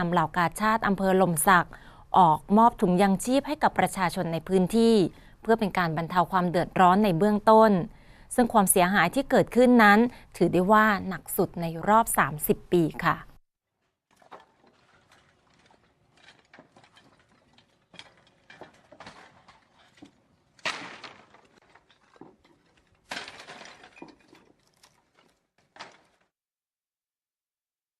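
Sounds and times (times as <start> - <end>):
knocks and clattering of repair work: 14.1 - 26.3.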